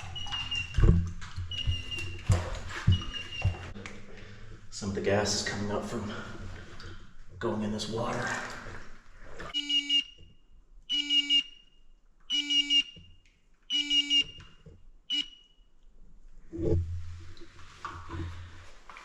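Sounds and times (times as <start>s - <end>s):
gas detector alarm beeping: 0.0s - 0.8s, 1.5s - 2.3s, 9.6s - 10.3s, 10.9s - 13.1s, 13.7s - 15.7s
water sloshing: 0.0s - 9.6s, 16.6s - 19.0s.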